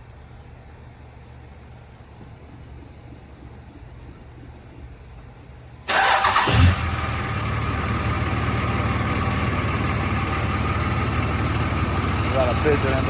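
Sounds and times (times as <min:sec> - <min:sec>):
pickup engine idling: 0:05.9 - 0:13.0.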